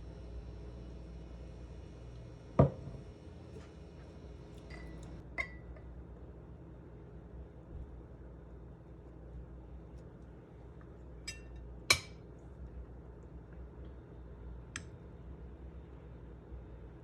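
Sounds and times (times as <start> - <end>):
low steady hum: 0.0 - 17.0
kitchenware knock: 2.6 - 3.0
kitchenware clinking: 11.3 - 12.2.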